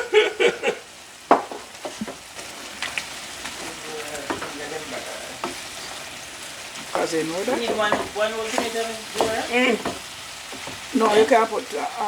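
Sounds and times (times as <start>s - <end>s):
food sizzling in a pot: 0.0s - 12.0s
utensil knocking against pot: 1.3s - 2.2s, 4.2s - 4.6s, 7.4s - 10.9s.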